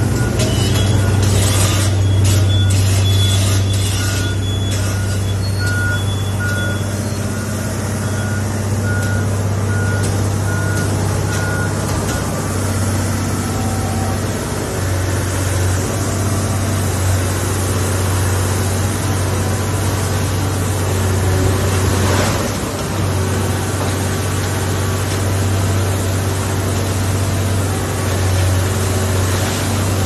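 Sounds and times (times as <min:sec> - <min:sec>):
reversing alarm beeping: 0:00.0 - 0:14.3
diesel demolition machine running: 0:00.0 - 0:30.0.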